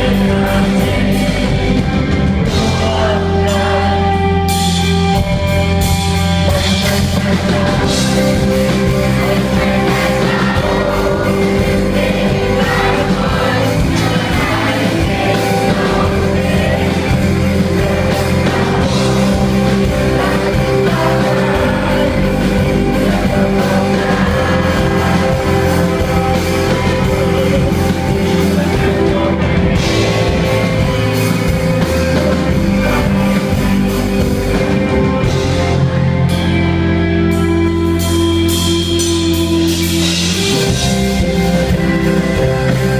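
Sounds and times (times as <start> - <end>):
person singing: 0.0 - 5.4, 6.2 - 35.7
rock band playing live: 0.0 - 42.9.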